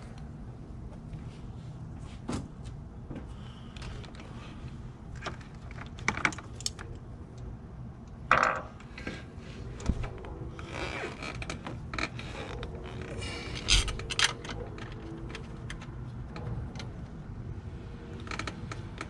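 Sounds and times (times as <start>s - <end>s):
hand tools clicking and clinking: 13.4s - 15.8s.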